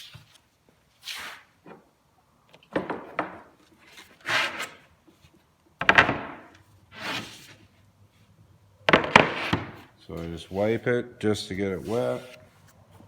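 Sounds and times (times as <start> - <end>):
sharp knocks of panels: 8.9 - 9.9
rag swishing on panels: 11.8 - 12.5.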